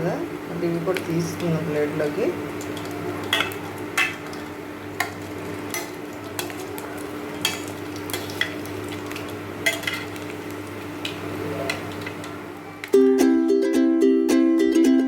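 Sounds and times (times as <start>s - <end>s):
oil sizzling in a pan: 0.0s - 12.9s.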